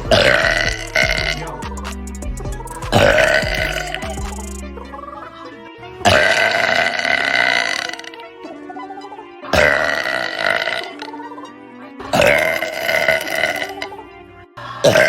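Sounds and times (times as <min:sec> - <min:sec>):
background music: 0:00.0 - 0:15.0
girl burping: 0:00.1 - 0:01.4, 0:03.0 - 0:04.0, 0:06.1 - 0:08.2, 0:09.5 - 0:11.1, 0:12.0 - 0:13.9.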